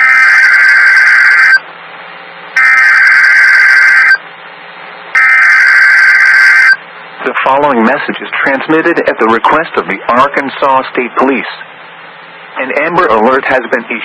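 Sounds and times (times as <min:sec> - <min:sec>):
digital data tone bursts: 0:00.0 - 0:01.6, 0:02.6 - 0:04.2, 0:05.2 - 0:06.8.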